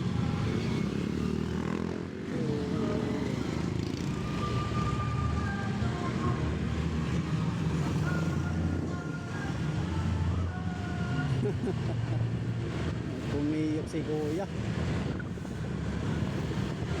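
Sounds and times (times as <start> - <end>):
vehicle engine and road rumble: 0.0 - 17.0.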